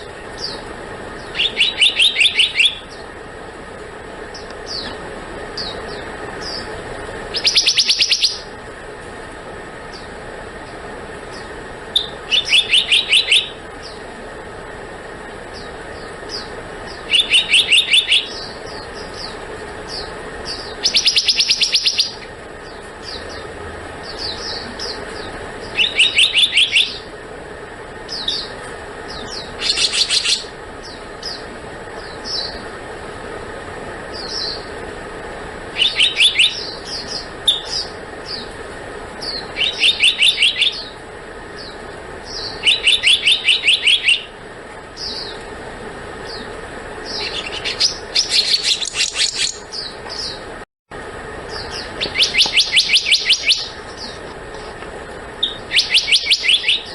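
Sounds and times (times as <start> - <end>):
monarch bird calling: 0.0 - 8.9, 9.6 - 50.5, 51.3 - 56.9.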